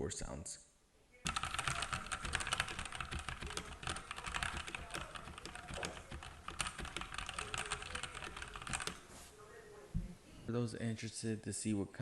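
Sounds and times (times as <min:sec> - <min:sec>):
fast typing on mechanical keyboard: 0:01.3 - 0:09.0.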